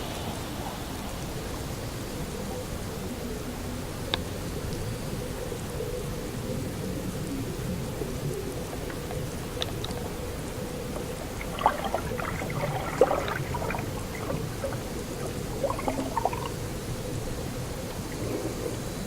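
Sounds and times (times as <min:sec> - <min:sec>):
faint hum: 0:02.0 - 0:19.0
underwater rushing noise: 0:07.4 - 0:19.0.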